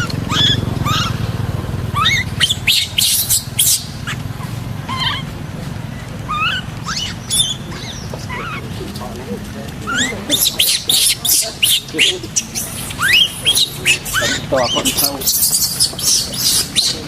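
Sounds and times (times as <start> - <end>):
short high chirping calls: 0.0 - 1.2, 2.0 - 4.2, 6.3 - 8.6, 9.9 - 17.0
low engine-like hum: 0.0 - 17.0.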